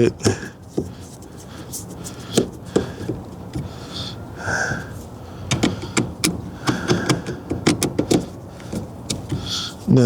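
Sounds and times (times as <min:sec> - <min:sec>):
metal parts clicking and knocking: 0:05.5 - 0:09.6.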